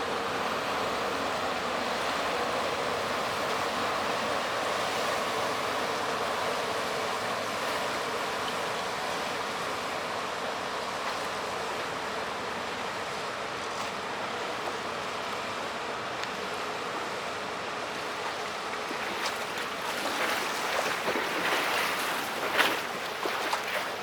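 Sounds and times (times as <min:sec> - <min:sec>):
rushing water: 0:00.0 - 0:24.0
wake splashing against bank: 0:18.2 - 0:24.0.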